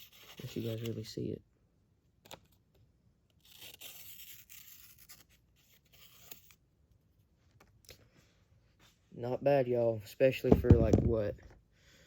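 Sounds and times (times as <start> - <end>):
knife slicing paper: 3.4 - 6.6.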